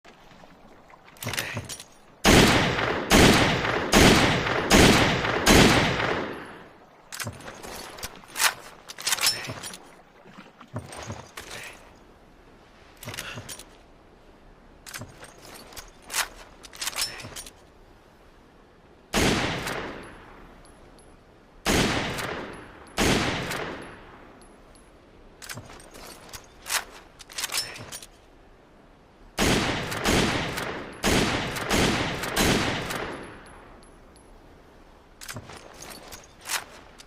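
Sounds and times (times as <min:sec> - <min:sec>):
rifle shots with echo: 0:02.2 - 0:06.6, 0:19.2 - 0:20.1, 0:21.7 - 0:24.0, 0:29.4 - 0:33.4.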